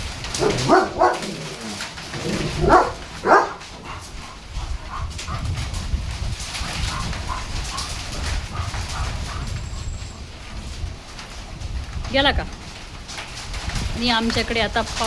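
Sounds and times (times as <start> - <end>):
wind rumble on microphone: 0.0 - 15.0
dog barking: 0.3 - 4.1.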